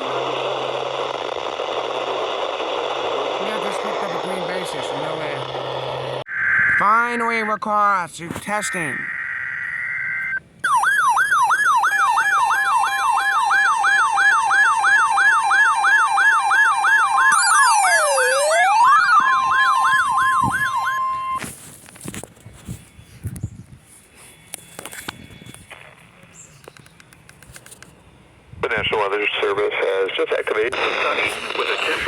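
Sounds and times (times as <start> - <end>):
steady warning tone: 0.0 - 21.4
siren wail sweeping down and up: 2.0 - 7.4, 8.7 - 21.4
electronic siren alarm yelping: 3.6 - 7.6, 8.5 - 21.4
two-pitch data header tone: 17.2 - 21.4.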